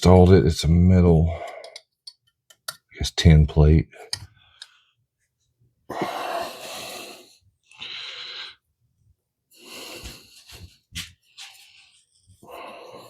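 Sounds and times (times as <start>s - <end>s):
person breathing out heavily: 5.9s - 8.6s, 11.6s - 13.0s.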